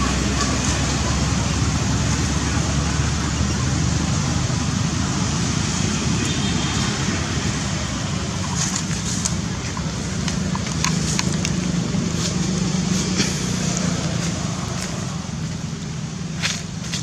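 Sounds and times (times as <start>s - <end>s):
low engine hum: 0.0s - 6.2s, 6.8s - 17.0s
road traffic rumble: 0.0s - 17.0s.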